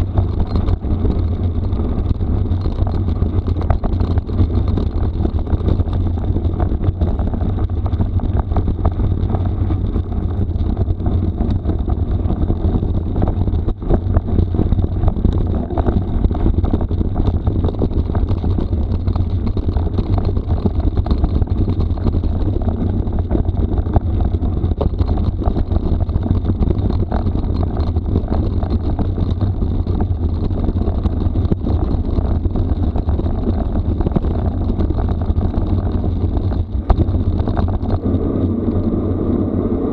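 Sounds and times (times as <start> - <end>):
bike tyres rattling on stones: 0.0 - 38.9
wind buffeting microphone: 0.0 - 39.9.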